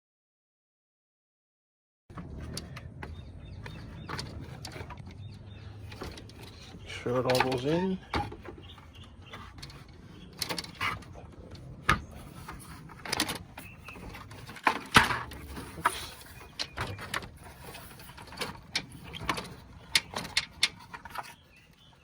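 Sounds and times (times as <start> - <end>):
radiator knocking and rattling: 2.1 - 22.0.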